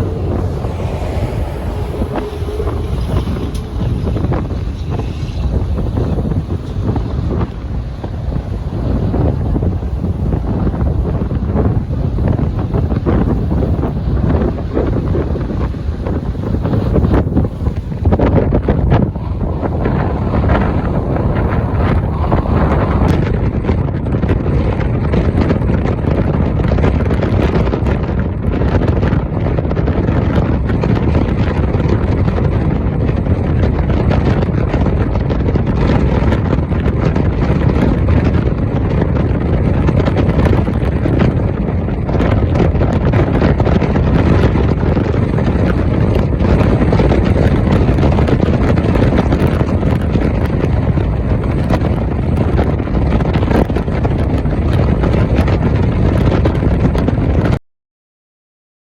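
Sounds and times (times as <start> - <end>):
wind buffeting microphone: 0.0 - 57.6.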